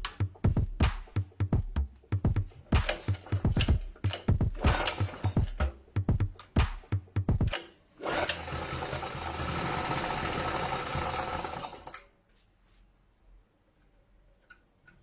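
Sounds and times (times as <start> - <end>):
sharp knocks: 0.0 - 7.6.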